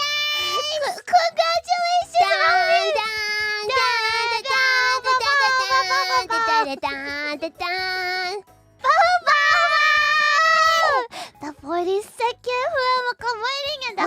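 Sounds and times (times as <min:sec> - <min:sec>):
high-pitched singing: 0:00.0 - 0:11.1.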